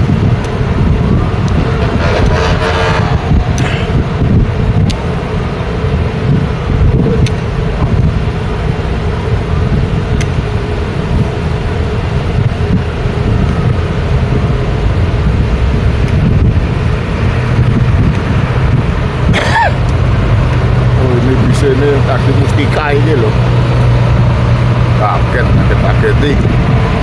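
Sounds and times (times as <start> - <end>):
road traffic rumble: 0.0 - 27.0.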